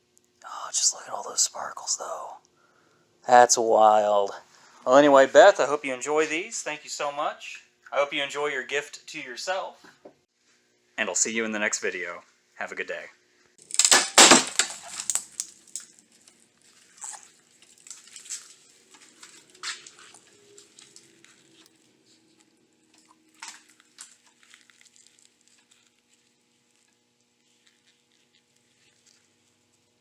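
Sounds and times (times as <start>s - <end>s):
faint steady hum: 0.0s - 30.0s
loud crunching clatter: 13.7s - 15.4s.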